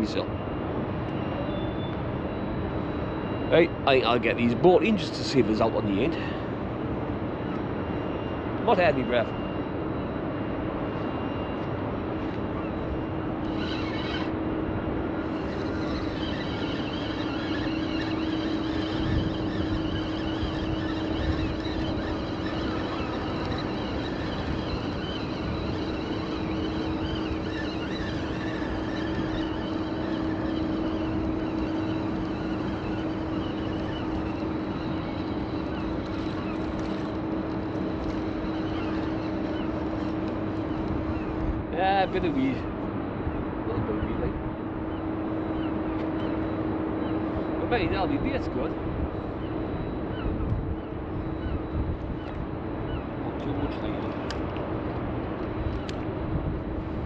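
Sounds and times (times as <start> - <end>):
steady low hum: 0.0 - 57.0
wind on microphone: 12.1 - 57.0
background rush: 15.1 - 41.7
high chirps: 15.2 - 41.4.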